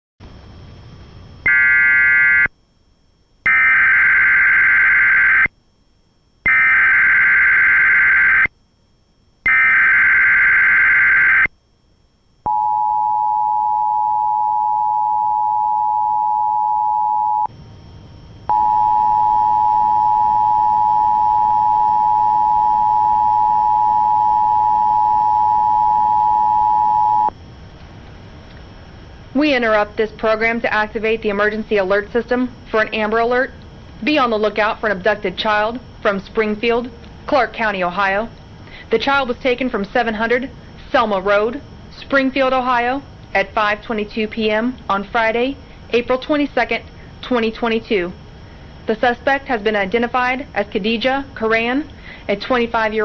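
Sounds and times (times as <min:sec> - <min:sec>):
harsh dual tone attention signal: 0:01.4 - 0:02.5, 0:03.5 - 0:05.5, 0:06.4 - 0:08.5, 0:09.4 - 0:11.5, 0:12.5 - 0:17.5, 0:18.5 - 0:27.4.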